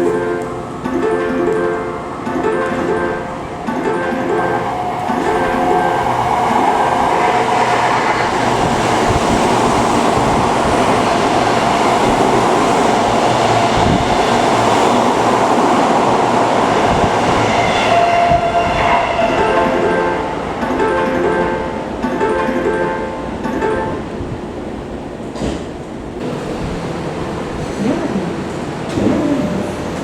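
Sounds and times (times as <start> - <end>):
platform warning chime: 0.0 - 7.9
train passing with wheel clatter: 0.0 - 30.0.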